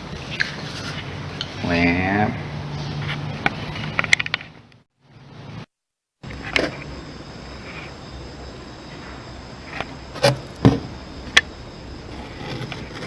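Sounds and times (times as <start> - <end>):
steady background hiss: 5.0 - 13.0.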